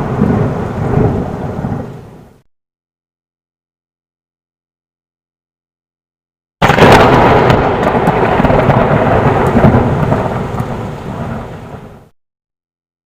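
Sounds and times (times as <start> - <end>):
thunder crack and rumble: 0.0 - 2.4, 6.6 - 12.1.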